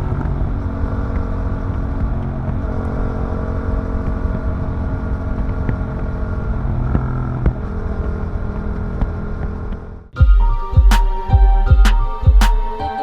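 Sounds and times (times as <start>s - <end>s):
motorcycle engine running: 0.0s - 10.4s.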